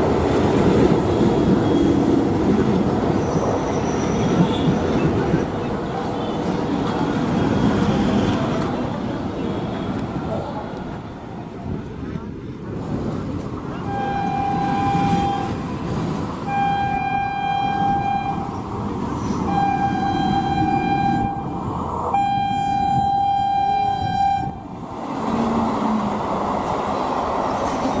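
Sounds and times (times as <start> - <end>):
train horn blasts: 13.9 - 15.6.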